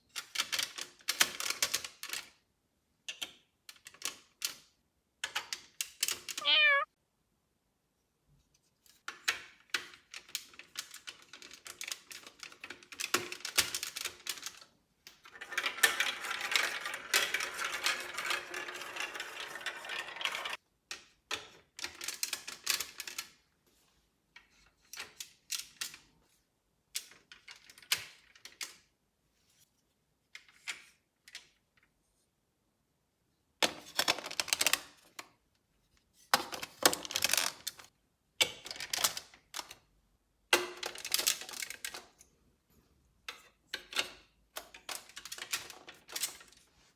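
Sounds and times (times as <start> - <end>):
marbles rattling in plastic track: 15.2 - 20.6.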